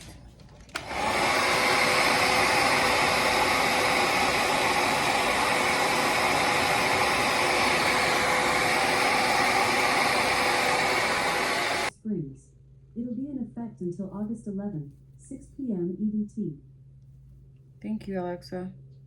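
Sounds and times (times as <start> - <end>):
hair dryer blowing: 0.7 - 11.9.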